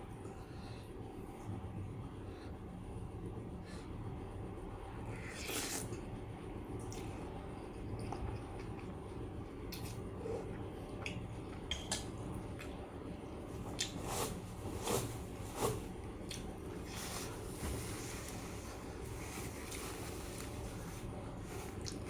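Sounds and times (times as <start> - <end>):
person chewing with wet smacks: 6.8 - 12.8, 13.6 - 14.0, 16.2 - 16.6, 21.8 - 22.0.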